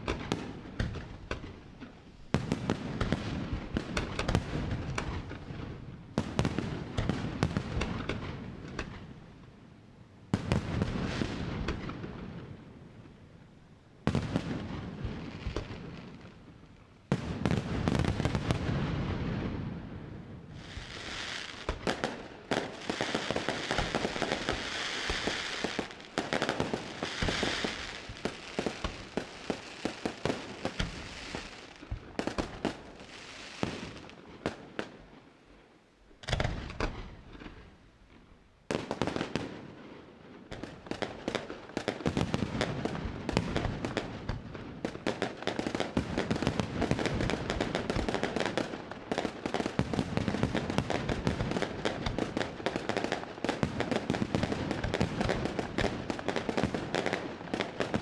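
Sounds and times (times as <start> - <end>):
fireworks bursts and bangs: 0.0 - 9.3, 10.3 - 12.6, 14.0 - 35.2, 36.2 - 37.7, 38.6 - 58.0
fireworks crackling: 10.3 - 35.2, 38.7 - 58.0.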